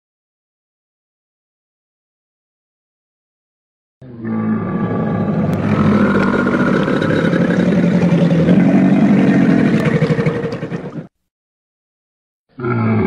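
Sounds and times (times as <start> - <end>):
low rough creature growl: 4.0 - 11.1, 12.5 - 13.0.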